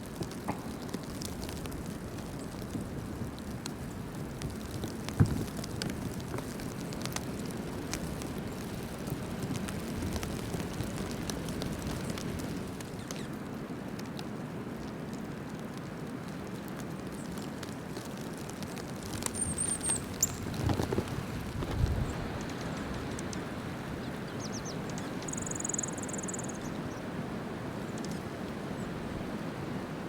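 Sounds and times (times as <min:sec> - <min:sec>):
small bird chirp: 0:13.0 - 0:13.3, 0:19.3 - 0:21.0, 0:22.0 - 0:27.0
light ticks: 0:17.2 - 0:24.0
storm wind: 0:18.4 - 0:30.0.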